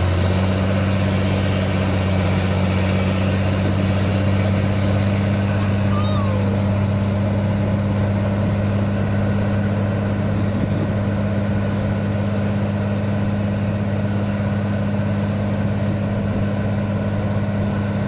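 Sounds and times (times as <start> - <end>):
harvester engine running steadily: 0.0 - 18.0.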